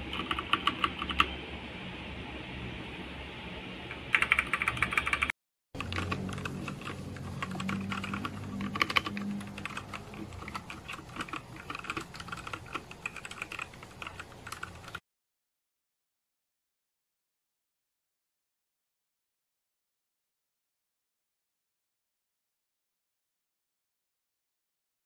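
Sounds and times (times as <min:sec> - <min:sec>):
mechanical keyboard typing: 0:00.0 - 0:01.3, 0:04.0 - 0:15.0.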